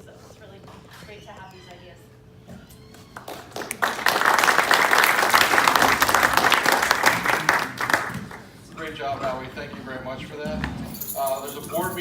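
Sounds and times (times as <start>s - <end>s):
audience applauding: 3.2s - 8.5s.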